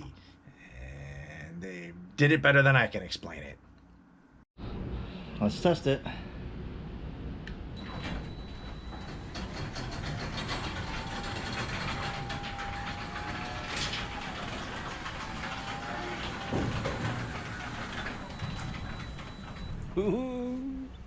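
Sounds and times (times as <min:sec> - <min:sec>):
garage door opener rumbling: 0:07.7 - 0:20.5
rapid clicking clatter: 0:08.8 - 0:19.8.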